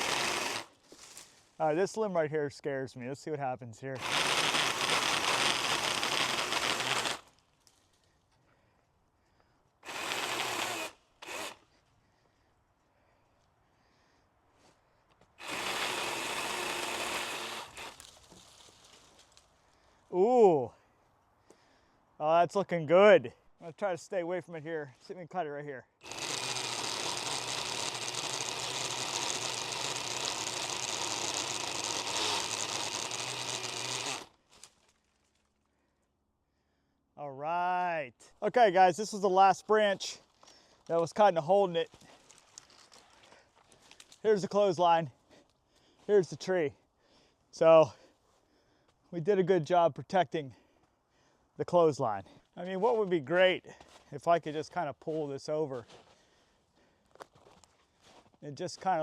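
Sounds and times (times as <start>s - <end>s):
chainsaw cutting tree limb: 0.0s - 0.8s, 4.0s - 7.4s, 9.8s - 11.6s, 15.4s - 18.6s, 26.0s - 34.7s.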